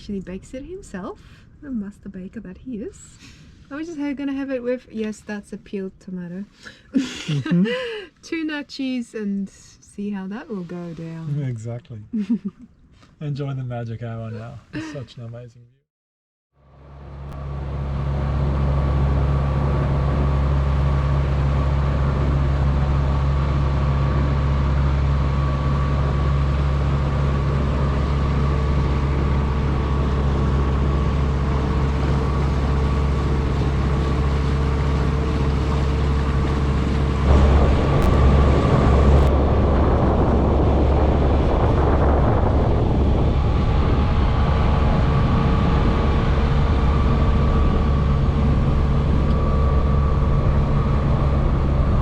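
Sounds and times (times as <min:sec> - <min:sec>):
diesel engine droning: 0:16.6 - 0:52.0
rushing noise: 0:34.2 - 0:52.0.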